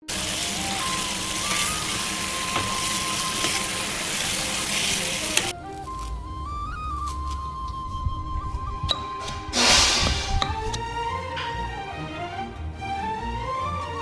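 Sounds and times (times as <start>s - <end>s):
food sizzling in hot oil: 0.0s - 5.5s
flute melody: 0.0s - 14.0s
stirring clicks: 4.4s - 5.6s.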